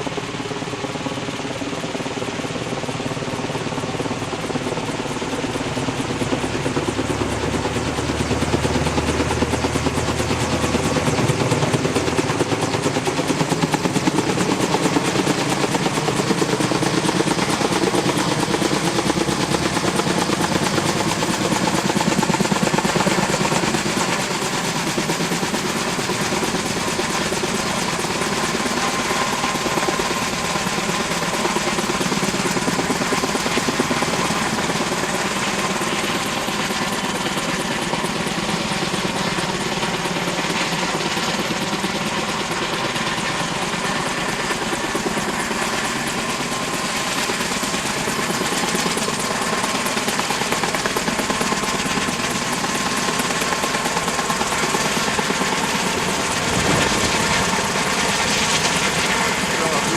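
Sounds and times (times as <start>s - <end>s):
helicopter engine and turbine: 0.0s - 59.9s
helicopter rotor chopping: 0.0s - 59.9s.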